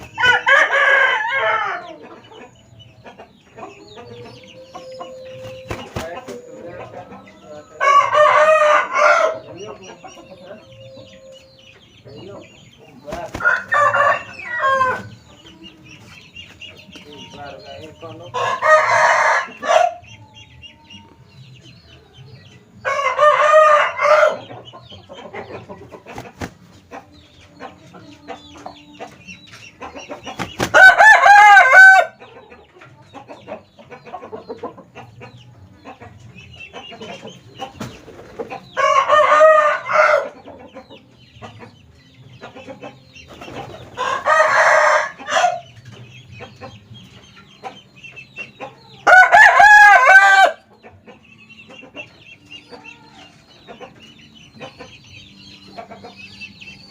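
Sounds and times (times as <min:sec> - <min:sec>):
roosters crowing: 0:00.0 - 0:02.3, 0:03.7 - 0:11.8, 0:13.1 - 0:15.3, 0:17.4 - 0:20.3, 0:22.8 - 0:26.5, 0:30.4 - 0:32.4, 0:38.6 - 0:40.5, 0:43.4 - 0:45.7, 0:48.9 - 0:50.7.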